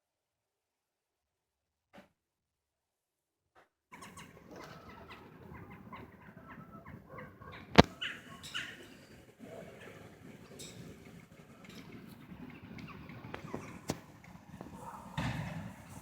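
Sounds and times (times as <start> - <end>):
birds chirping: 3.9 - 13.9.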